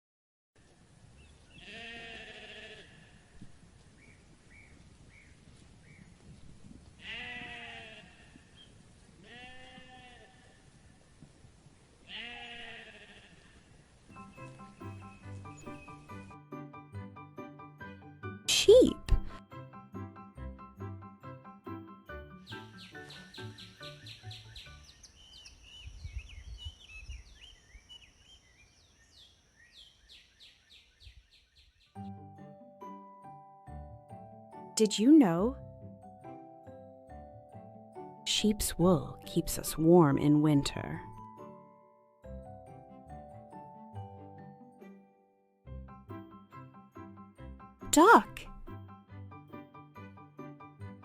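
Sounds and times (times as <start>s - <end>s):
sheep bleating: 1.6s - 3.3s, 7.0s - 8.5s, 9.2s - 10.6s, 12.1s - 13.7s
light music: 14.1s - 25.0s, 32.0s - 51.0s
small birds chirping and whistling: 14.2s - 16.2s, 22.5s - 32.0s.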